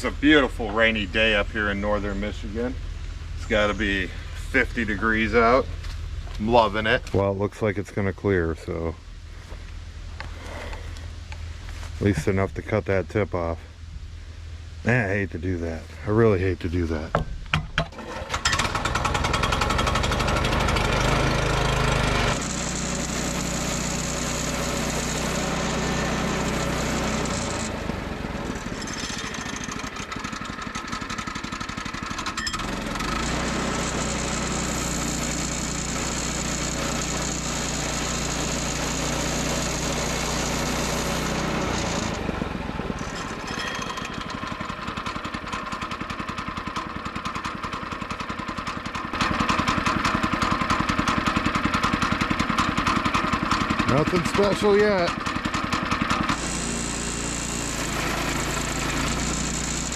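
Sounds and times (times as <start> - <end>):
chainsaw cutting log: 17.8 - 59.9.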